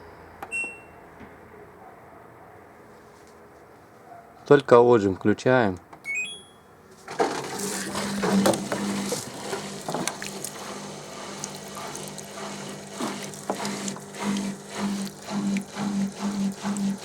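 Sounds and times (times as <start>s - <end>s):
washing machine motor hum: 7.1s - 17.0s
water draining: 7.2s - 17.0s.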